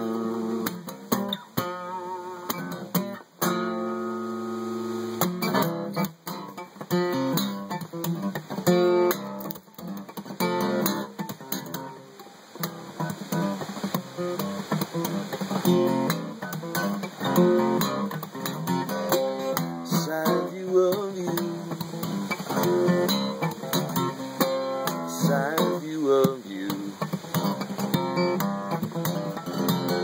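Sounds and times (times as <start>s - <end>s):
acoustic guitar strumming chords: 0.0s - 30.0s.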